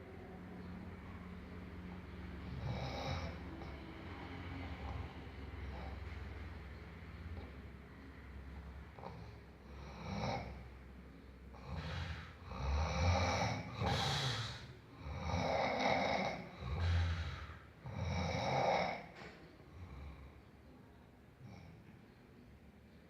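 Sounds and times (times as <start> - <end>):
person snoring: 2.4 - 6.0, 9.0 - 10.7, 11.5 - 19.1.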